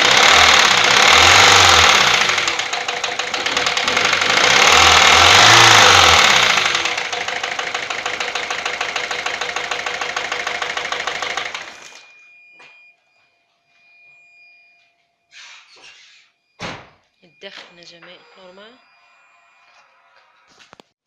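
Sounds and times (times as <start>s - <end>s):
diesel engine revving: 0.0s - 12.0s
engine idling with ticking knock: 0.0s - 12.0s.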